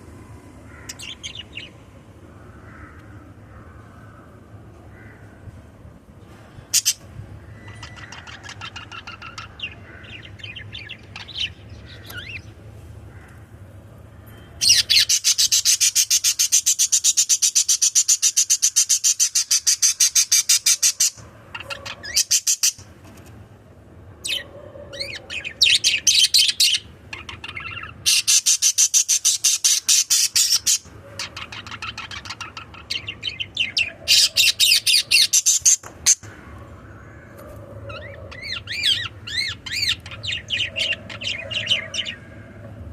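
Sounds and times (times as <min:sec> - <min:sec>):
budgerigars chirping: 0:25.0 - 0:36.2, 0:37.9 - 0:42.2.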